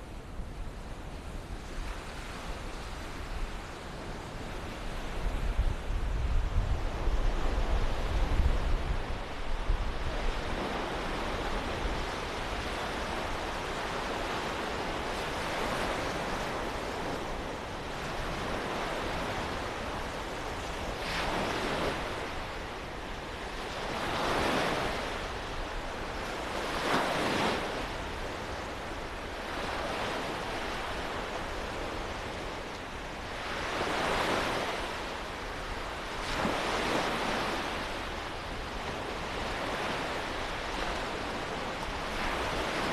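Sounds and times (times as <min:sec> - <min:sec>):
small waves breaking on beach: 0:00.0 - 0:42.9.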